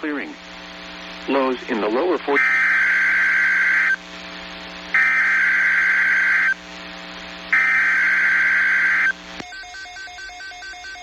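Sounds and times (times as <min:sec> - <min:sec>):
buzzing digital alert data bursts: 0:02.4 - 0:04.0, 0:05.0 - 0:06.6, 0:07.5 - 0:09.2.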